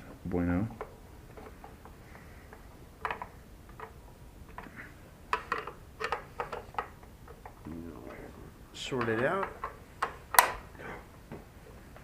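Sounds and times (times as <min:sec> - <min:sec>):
tools and small parts clicking: 0:05.3 - 0:07.6.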